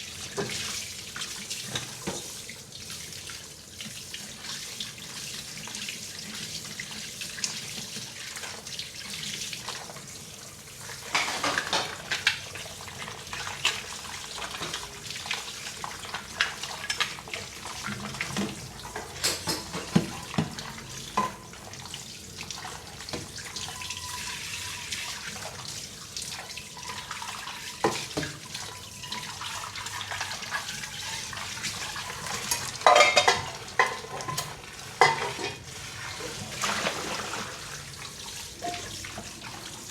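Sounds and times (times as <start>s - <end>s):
running tap water: 0.0s - 39.9s
dishes clinking and knocking: 11.1s - 12.0s, 18.3s - 20.6s, 32.2s - 35.6s.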